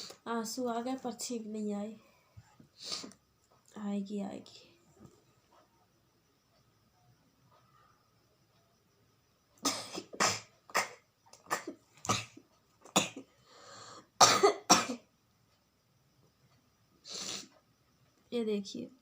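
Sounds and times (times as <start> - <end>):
hissing breath: 2.7 - 3.2, 13.3 - 14.2, 17.0 - 17.5
woman coughing: 9.6 - 13.3, 14.2 - 15.1.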